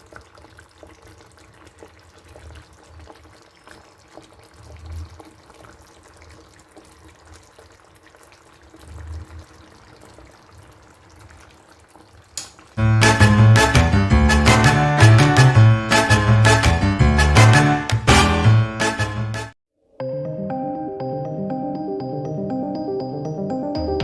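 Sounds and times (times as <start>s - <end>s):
water trickling: 0.0s - 12.8s.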